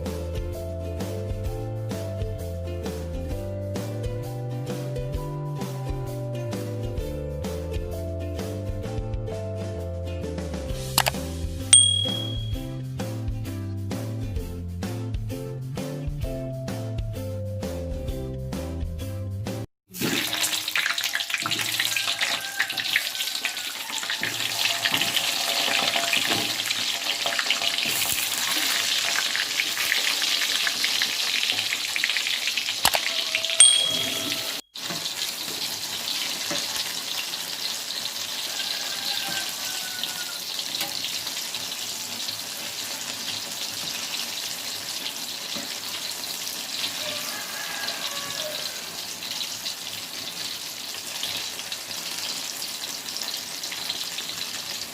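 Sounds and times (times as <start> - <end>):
food sizzling in hot oil: 10.7 - 12.6, 19.9 - 54.9
short sharp click: 11.0 - 11.2.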